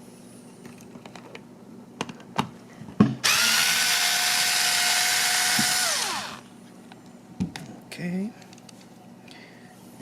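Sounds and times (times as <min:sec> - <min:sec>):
power screwdriver running: 0:03.2 - 0:06.4.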